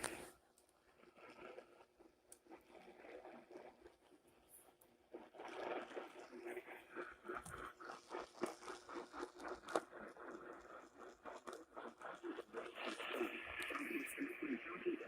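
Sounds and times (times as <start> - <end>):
crackling radio static: 0.0 - 0.3, 12.9 - 15.0.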